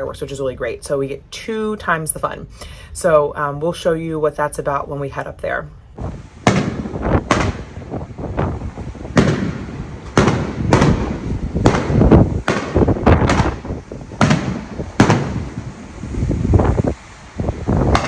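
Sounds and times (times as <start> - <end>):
fireworks bangs: 6.0 - 18.0.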